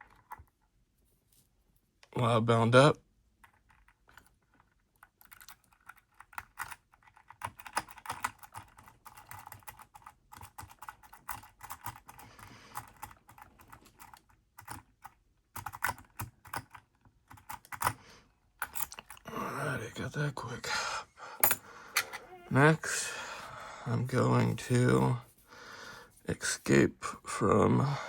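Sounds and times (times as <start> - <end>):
lock pick clicking and scraping: 18.6 - 19.2.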